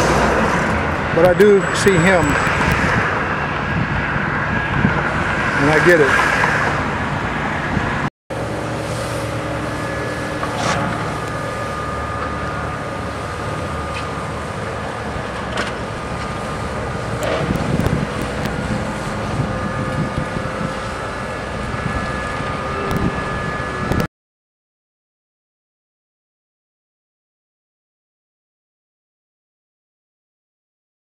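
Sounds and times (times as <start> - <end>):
mechanical hum: 0.0 - 24.1
traffic and machinery noise: 0.0 - 24.1.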